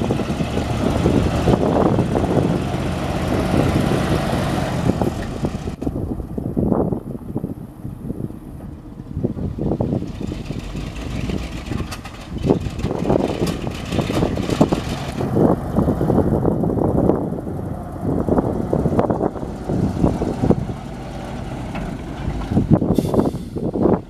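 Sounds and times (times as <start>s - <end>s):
truck engine running: 0.0s - 24.0s
wind buffeting microphone: 0.0s - 24.0s.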